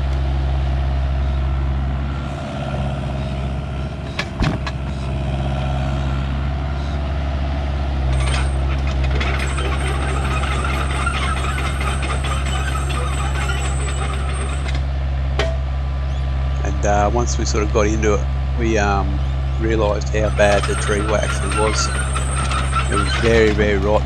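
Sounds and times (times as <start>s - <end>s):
heavy machine engine running: 0.0s - 24.0s
rattling and clattering: 8.0s - 15.7s, 19.8s - 24.0s.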